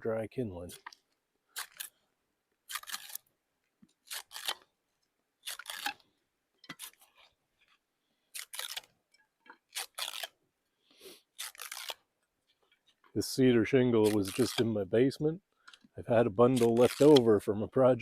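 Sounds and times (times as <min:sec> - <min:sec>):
wood shingle splitting with snaps: 0:05.4 - 0:06.0.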